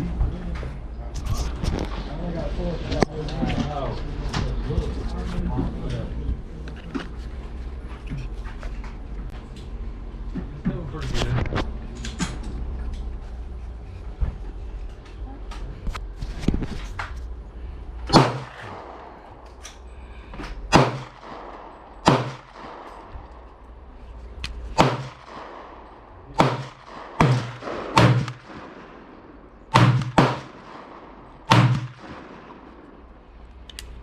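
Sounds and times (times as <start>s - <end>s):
gunshots with echo: 18.1s - 19.5s, 20.7s - 23.4s, 24.7s - 33.2s.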